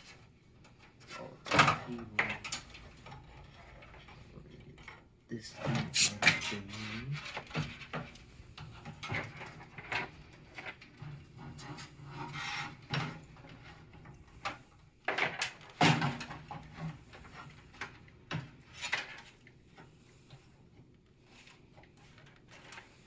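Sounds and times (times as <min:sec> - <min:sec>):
radiator rubbing and scraping: 0:02.0 - 0:14.6.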